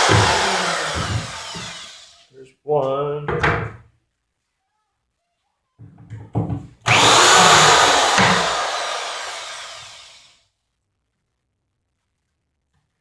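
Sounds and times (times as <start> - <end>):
wooden knocks: 0.0 - 1.9, 5.8 - 8.5
power drill backing out screw: 0.0 - 2.2, 6.9 - 10.2.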